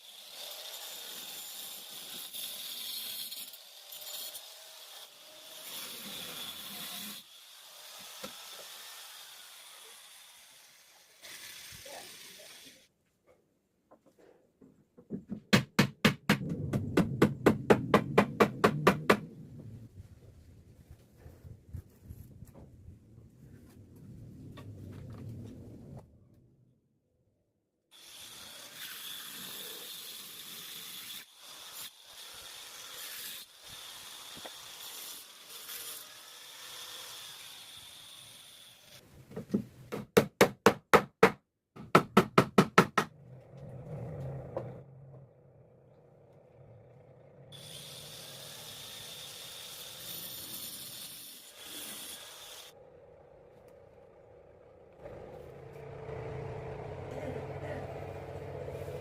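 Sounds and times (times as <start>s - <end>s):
hammer blows: 15.4s - 19.3s.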